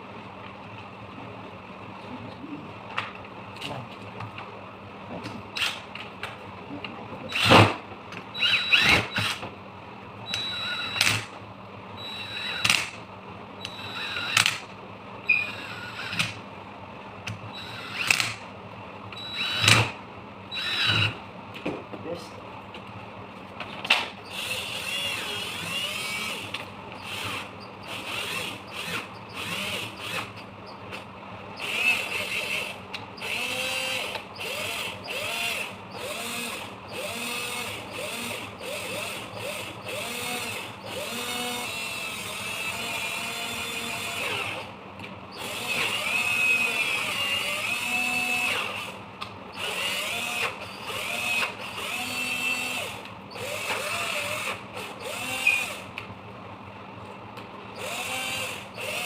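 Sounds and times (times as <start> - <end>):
cordless drill motor whining: 7.3 - 9.4, 10.3 - 11.3, 12.0 - 13.0, 13.6 - 16.4, 17.4 - 18.4, 19.1 - 21.2, 24.2 - 30.5, 31.6 - 44.7, 45.3 - 55.9, 57.8 - 59.0.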